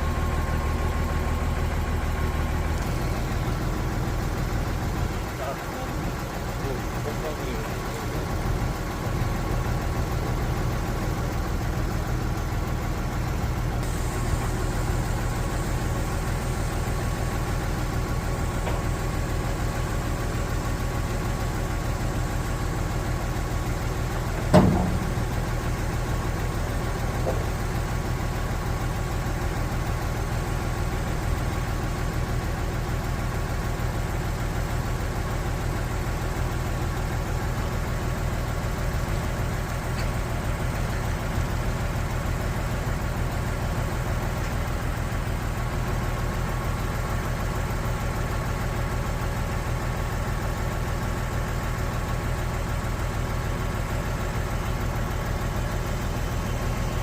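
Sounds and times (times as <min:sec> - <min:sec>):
diesel engine running: 0:00.0 - 0:57.0
sharp metallic knock: 0:24.5 - 0:25.1.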